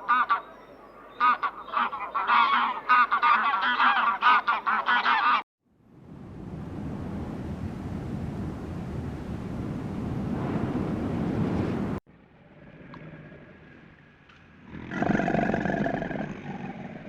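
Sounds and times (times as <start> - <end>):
waterfowl calling: 0.0 - 5.4.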